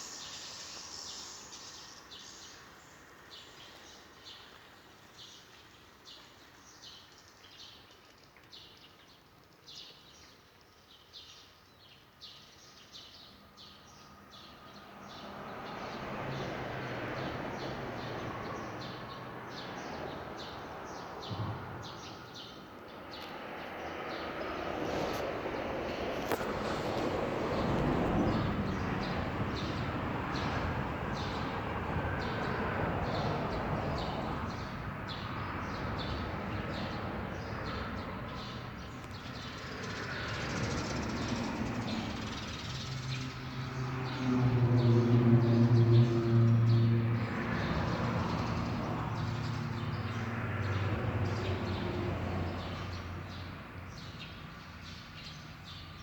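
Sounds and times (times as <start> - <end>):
motor vehicle passing: 15.1 - 54.8.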